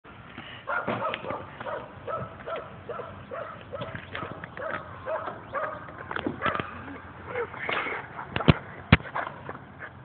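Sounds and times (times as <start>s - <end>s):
dog barking: 0.7s - 6.7s.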